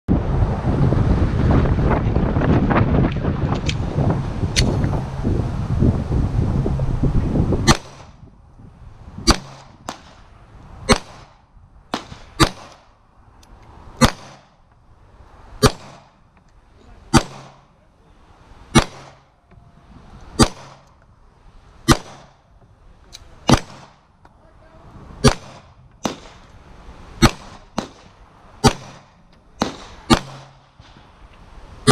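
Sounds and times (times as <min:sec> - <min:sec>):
wind noise on microphone: 0:00.1 - 0:31.9
pistol shots: 0:07.6 - 0:08.1, 0:09.2 - 0:10.2, 0:10.9 - 0:12.9, 0:14.0 - 0:14.6, 0:15.6 - 0:16.2, 0:17.1 - 0:17.7, 0:18.7 - 0:19.3, 0:20.4 - 0:20.9, 0:21.9 - 0:22.4, 0:23.4 - 0:24.0, 0:25.2 - 0:26.5, 0:27.2 - 0:31.0
fainter distant gunshots: 0:09.2 - 0:12.9, 0:14.0 - 0:14.6, 0:17.1 - 0:17.8, 0:18.7 - 0:19.4, 0:21.8 - 0:22.4, 0:25.2 - 0:26.5, 0:27.2 - 0:31.0.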